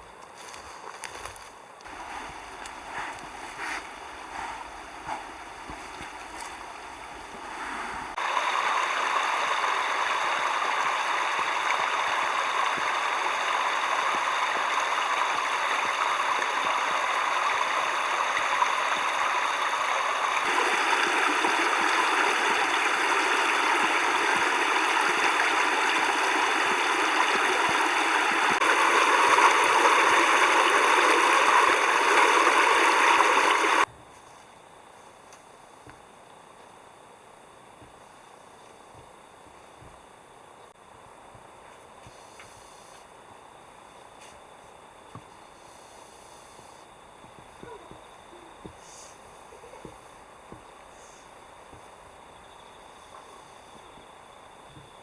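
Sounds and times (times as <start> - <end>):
mountain stream rushing: 1.9 - 33.9.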